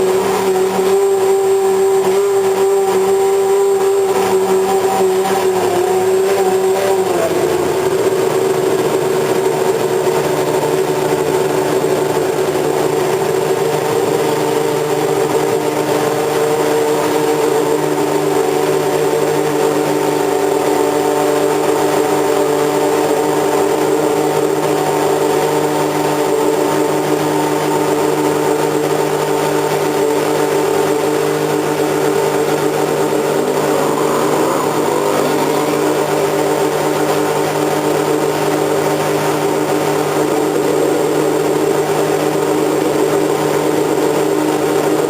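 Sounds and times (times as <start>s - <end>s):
racing car engine running: 0.0s - 45.0s
second engine passing: 26.5s - 43.9s.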